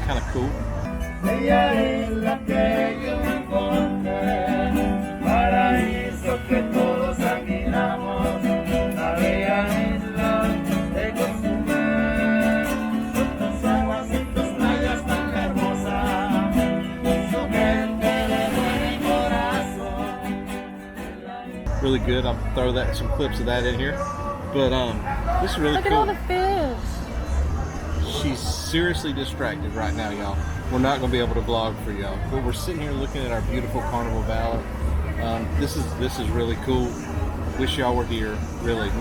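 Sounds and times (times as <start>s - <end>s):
acoustic guitars strummed: 0.0s - 39.0s
person singing: 0.6s - 21.8s.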